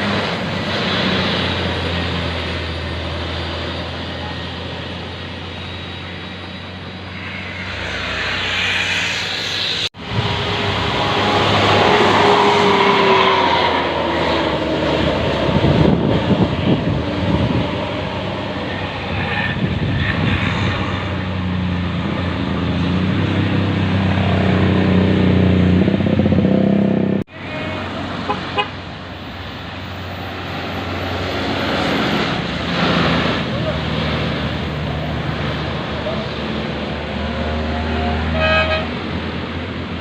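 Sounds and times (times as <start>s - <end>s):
bus engine running: 0.0s - 40.0s
bus horn playing a melody: 27.4s - 28.8s, 37.9s - 39.0s.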